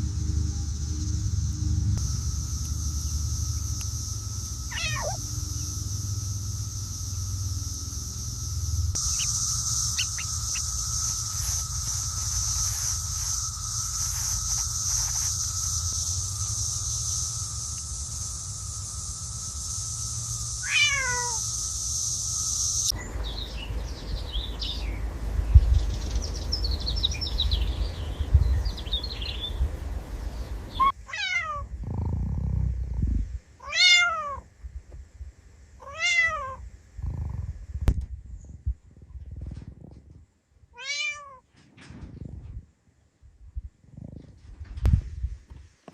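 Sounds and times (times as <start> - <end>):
low rumble: 0.0 - 20.6, 31.7 - 33.5
steady hiss: 0.0 - 31.2
cat meowing: 4.7 - 5.2, 20.6 - 21.4, 30.8 - 31.7, 33.6 - 34.4, 35.8 - 36.6, 40.8 - 41.4.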